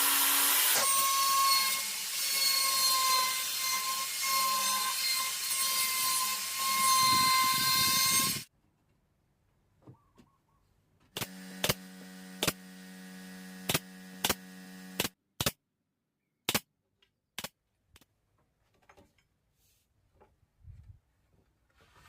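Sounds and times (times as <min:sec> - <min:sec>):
pneumatic nail gun firing: 0:11.2 - 0:15.5.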